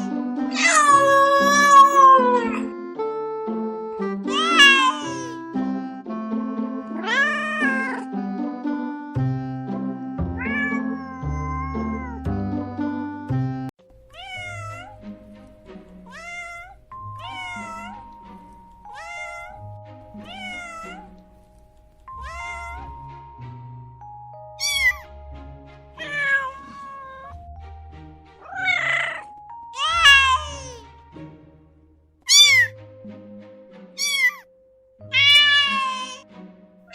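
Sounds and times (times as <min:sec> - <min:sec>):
background music with held notes: 0:00.0 - 0:36.9
cat meowing: 0:00.5 - 0:02.7, 0:04.3 - 0:05.4, 0:06.9 - 0:08.1, 0:10.4 - 0:12.2, 0:14.0 - 0:21.3, 0:22.0 - 0:23.1, 0:24.6 - 0:25.1, 0:26.0 - 0:27.5, 0:28.4 - 0:30.8, 0:32.3 - 0:32.8, 0:34.0 - 0:36.2.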